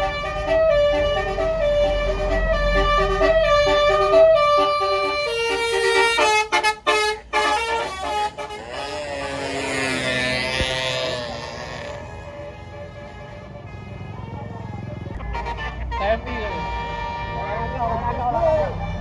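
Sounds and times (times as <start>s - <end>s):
musical air horn melody: 0.0s - 13.4s
bus engine rumble: 0.0s - 19.0s.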